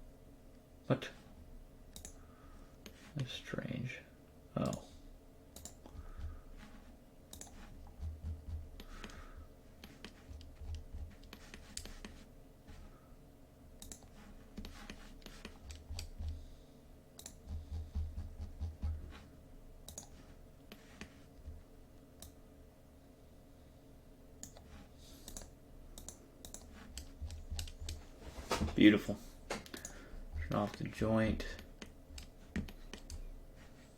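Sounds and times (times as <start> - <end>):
faint steady hum: 0.0 - 33.9
computer mouse clicks: 1.9 - 2.2, 5.5 - 6.0, 7.3 - 7.7, 9.8 - 12.2, 13.8 - 16.4, 17.2 - 17.8, 19.8 - 21.1, 22.2 - 22.4, 24.4 - 28.0, 29.6 - 30.9, 31.6 - 33.3
keystrokes: 1.9 - 2.2, 5.6 - 6.0, 7.3 - 7.7, 13.8 - 16.4, 17.2 - 17.8, 19.8 - 20.1, 25.2 - 28.0
soft low thumps: 5.9 - 6.9, 7.5 - 9.5, 17.4 - 19.2.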